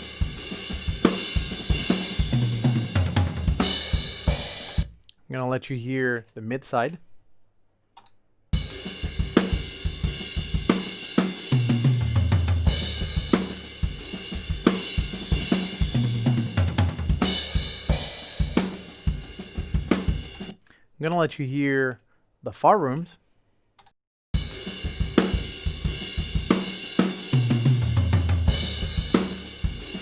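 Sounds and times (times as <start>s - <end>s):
drum kit playing a beat: 0.0s - 5.0s, 8.6s - 20.6s, 24.4s - 30.0s.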